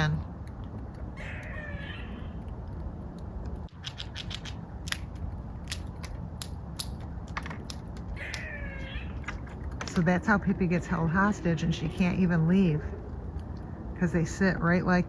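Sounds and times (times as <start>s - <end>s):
sharp clicks and scratches: 0.3s - 10.1s.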